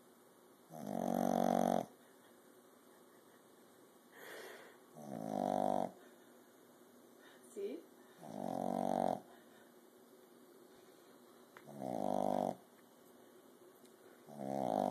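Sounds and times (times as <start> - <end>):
puppy snoring: 0.7 - 2.0, 4.2 - 6.1, 8.1 - 9.5, 11.6 - 12.7, 14.2 - 14.9
soft breath: 4.1 - 4.9, 5.9 - 8.4, 9.2 - 11.5.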